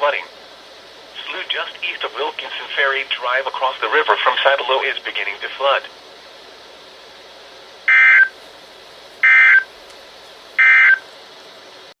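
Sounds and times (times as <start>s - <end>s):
steady radio hiss: 0.0s - 12.0s
buzzy digital tone bursts: 7.9s - 8.3s.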